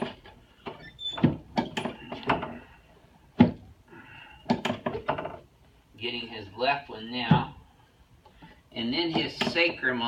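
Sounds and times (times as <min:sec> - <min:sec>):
joint adjustment knocks and clicks: 0:00.0 - 0:02.6, 0:03.4 - 0:03.7, 0:04.4 - 0:05.5.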